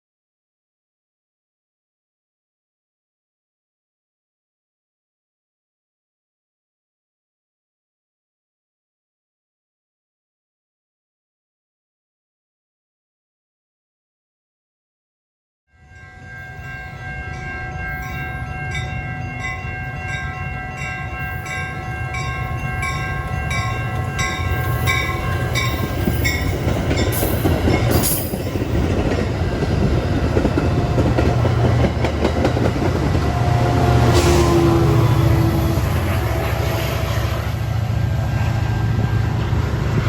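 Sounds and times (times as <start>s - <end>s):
bell ringing: 15.9s - 28.9s
diesel train engine rumble: 17.0s - 40.0s.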